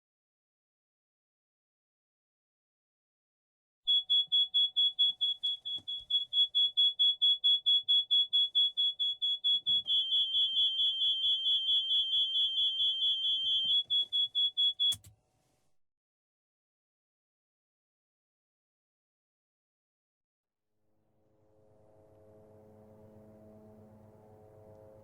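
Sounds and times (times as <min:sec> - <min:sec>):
click: 0:03.9 - 0:06.3, 0:13.4 - 0:15.2
continuous high tone: 0:03.9 - 0:15.1
electronic alarm beeping: 0:03.9 - 0:15.1.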